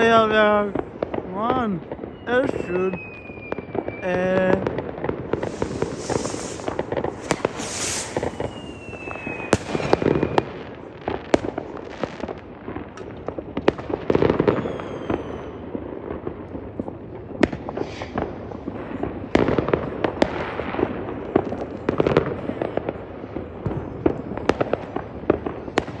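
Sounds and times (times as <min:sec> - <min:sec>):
fireworks bangs and crackling: 0:00.0 - 0:26.0
fireworks booms: 0:00.0 - 0:26.0
whistling rockets: 0:02.0 - 0:04.6, 0:05.2 - 0:12.0, 0:14.3 - 0:15.7, 0:17.5 - 0:18.7.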